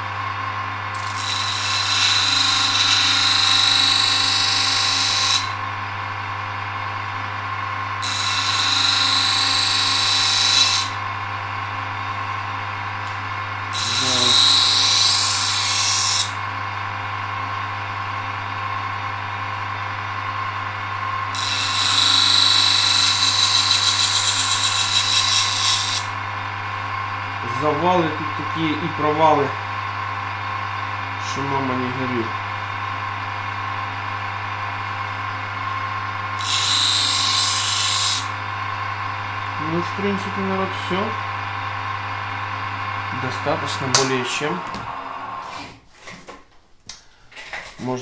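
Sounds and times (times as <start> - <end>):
electric grinder running: 0.9 - 5.6, 8.0 - 11.0, 13.0 - 16.4, 21.3 - 26.2, 35.6 - 45.7
knife blade grinding: 1.0 - 5.6, 8.0 - 11.0, 13.7 - 16.4, 21.3 - 26.1, 36.4 - 38.3.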